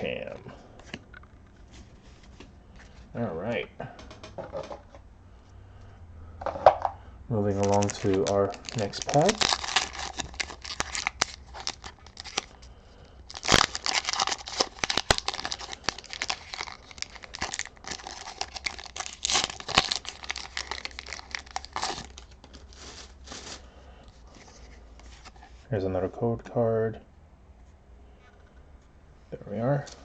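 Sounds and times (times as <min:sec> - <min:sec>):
foil wrapper tearing and crinkling: 0:07.5 - 0:12.7, 0:13.3 - 0:23.7.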